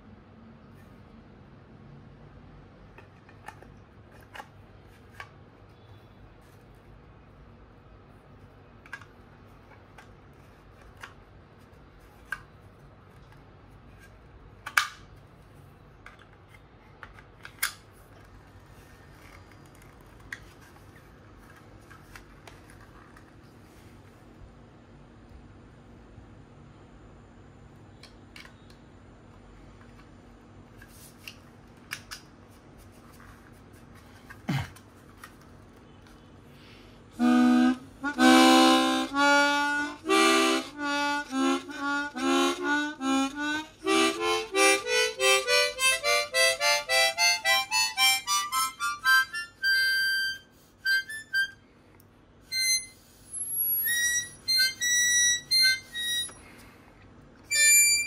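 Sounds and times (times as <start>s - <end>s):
harmonica playing: 37.1s - 51.6s, 52.4s - 56.5s, 57.5s - 58.0s.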